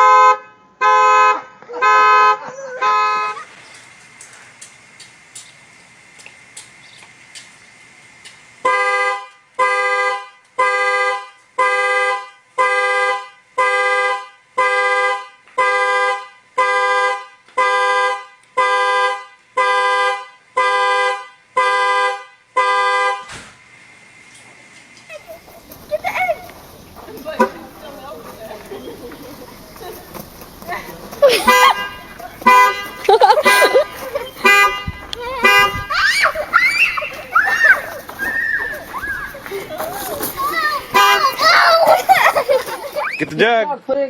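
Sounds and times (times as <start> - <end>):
car alarm horn honking: 0.0 - 3.4, 8.6 - 23.3, 27.3 - 27.8, 31.3 - 37.3, 40.9 - 41.8
faint ticks: 3.6 - 7.6.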